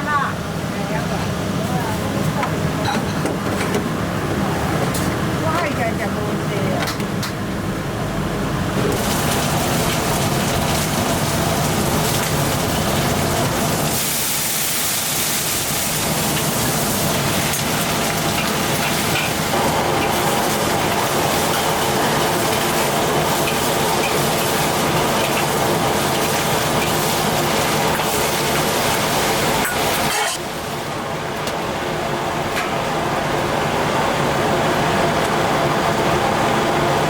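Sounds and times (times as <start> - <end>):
cooking hiss: 8.8 - 30.8.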